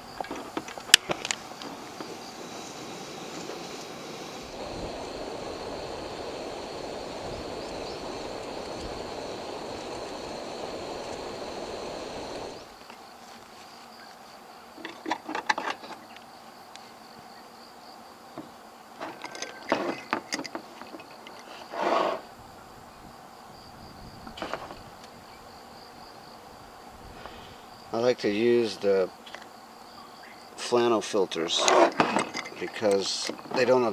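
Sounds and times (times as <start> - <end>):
crickets chirping: 0.0 - 33.9
steady rushing noise: 1.0 - 12.7.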